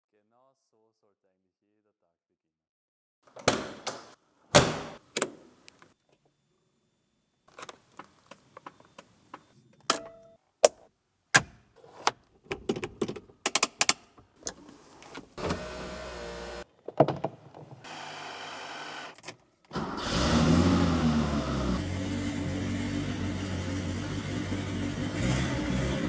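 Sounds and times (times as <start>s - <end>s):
car doors and controls clicking: 11.4s - 17.8s
electric motor whine: 15.4s - 16.6s, 17.9s - 19.2s.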